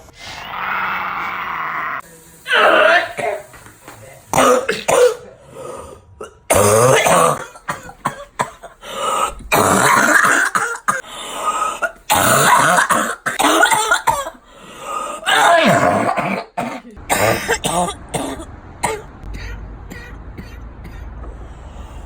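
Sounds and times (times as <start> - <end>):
person coughing loudly: 4.4 - 5.4, 6.2 - 14.4, 15.2 - 21.2.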